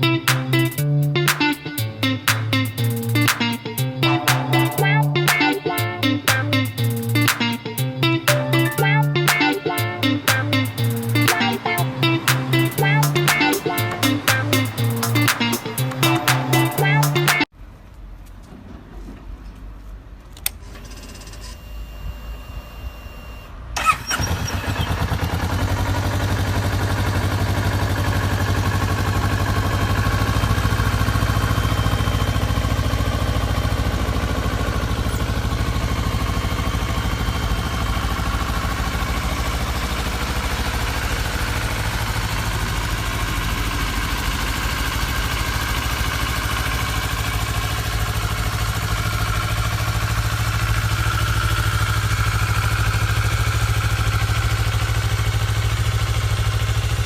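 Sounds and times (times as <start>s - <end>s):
motorcycle engine idling: 25.0s - 57.0s.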